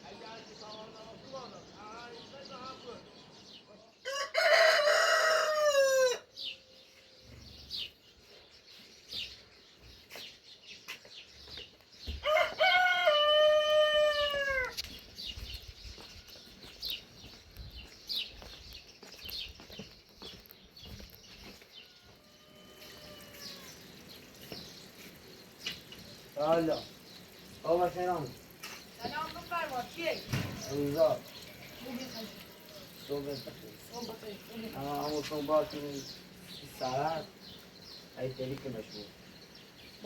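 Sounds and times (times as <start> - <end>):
rooster crowing: 4.0 - 6.3, 12.2 - 14.8, 21.8 - 23.9.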